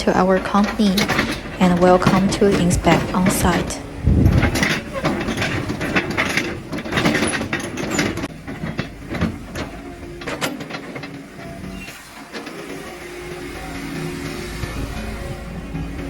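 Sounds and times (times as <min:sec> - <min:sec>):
excavator running under load: 0:00.0 - 0:16.0
metallic clanks and knocks: 0:00.0 - 0:16.0.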